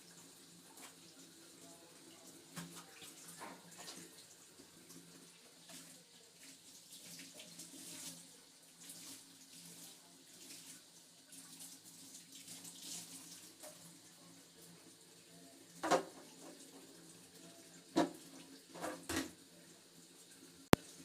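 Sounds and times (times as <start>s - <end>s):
tap water splashing in sink: 0.6s - 1.2s, 2.5s - 8.2s, 15.8s - 16.9s, 17.9s - 19.4s.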